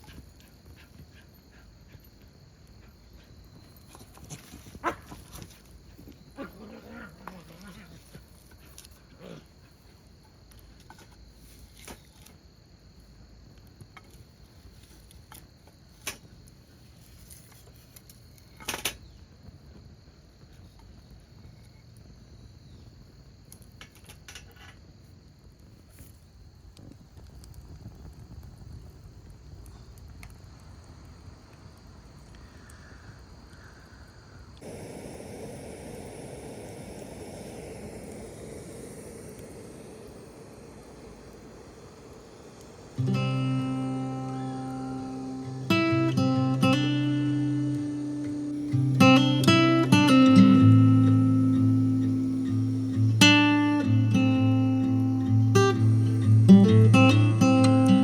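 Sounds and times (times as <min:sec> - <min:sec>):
high insect trill: 0:00.0 - 0:58.0
campfire popping: 0:13.1 - 0:58.0
loud steady hiss: 0:26.4 - 0:58.0.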